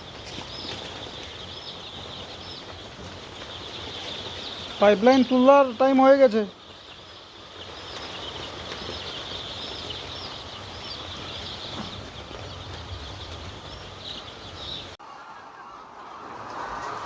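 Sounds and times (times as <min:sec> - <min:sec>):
chickens chirping: 0:00.0 - 0:17.0
low rumble: 0:15.0 - 0:17.0.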